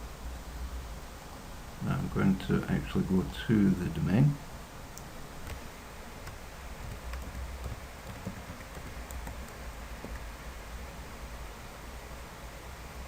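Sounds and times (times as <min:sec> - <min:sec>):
low hum and hiss: 0:00.0 - 0:13.0
keyboard keystrokes and clicks: 0:06.2 - 0:10.3.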